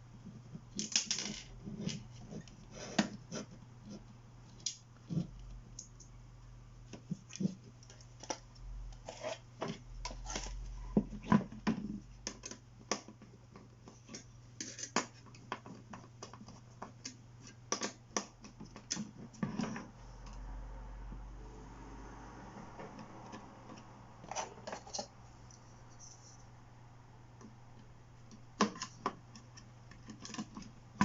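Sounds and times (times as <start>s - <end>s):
computer hardware clicks and scrapes: 7.2s - 11.4s, 13.9s - 15.3s, 23.0s - 26.5s.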